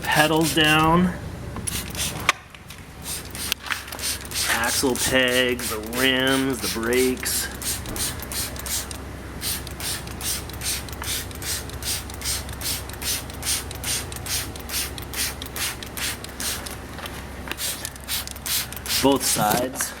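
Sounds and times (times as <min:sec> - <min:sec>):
spray bottle hissing bursts: 0:00.2 - 0:00.9, 0:01.6 - 0:02.3, 0:03.0 - 0:16.8, 0:17.6 - 0:19.4
spray trigger clicking: 0:03.1 - 0:16.8, 0:17.5 - 0:19.1.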